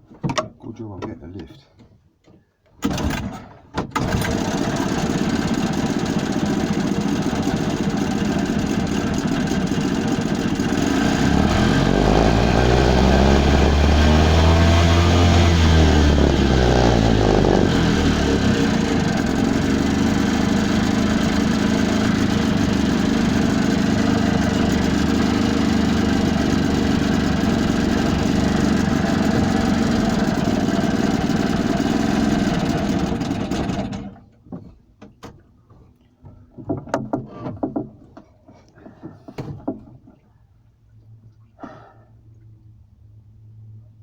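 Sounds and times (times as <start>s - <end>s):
boat engine running: 4.0s - 34.2s
knocks and clatters: 36.5s - 38.3s.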